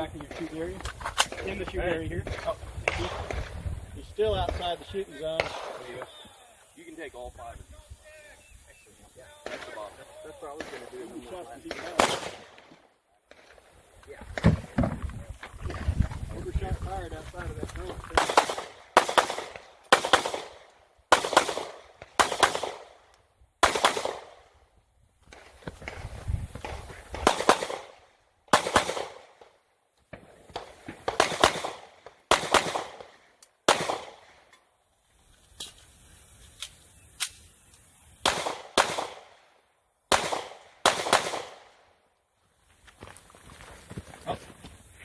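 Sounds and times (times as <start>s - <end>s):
gunshots with echo: 2.2s - 3.6s, 4.5s - 6.1s, 10.6s - 12.8s, 18.1s - 23.0s, 23.6s - 24.4s, 27.2s - 29.4s, 30.6s - 34.4s, 38.2s - 39.4s, 40.1s - 41.8s.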